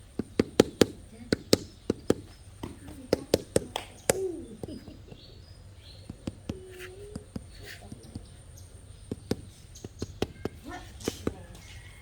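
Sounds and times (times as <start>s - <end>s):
bricks tapping and clicking: 6.0s - 8.4s, 9.1s - 11.7s.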